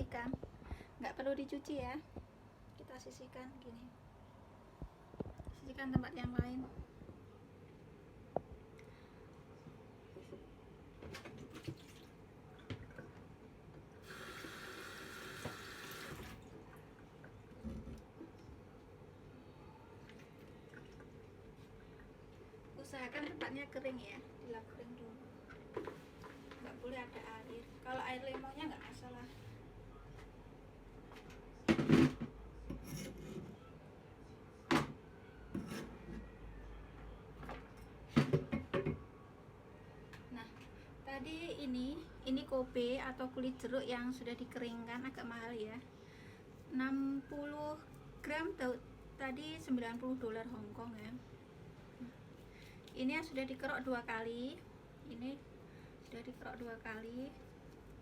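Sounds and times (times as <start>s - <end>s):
tap running into sink: 15.2s - 16.4s.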